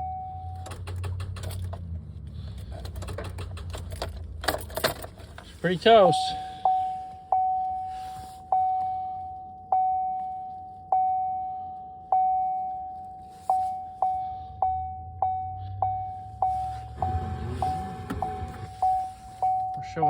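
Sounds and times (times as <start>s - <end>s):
vehicle warning chime dinging: 0.0s - 1.0s, 3.9s - 20.0s.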